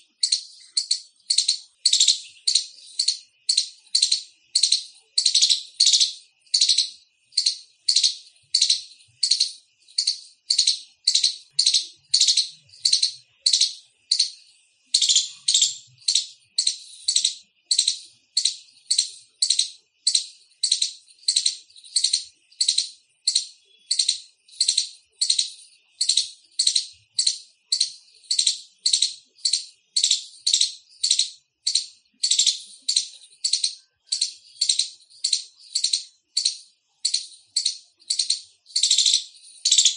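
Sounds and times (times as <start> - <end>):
squirrel chirping call: 0.0 - 39.9.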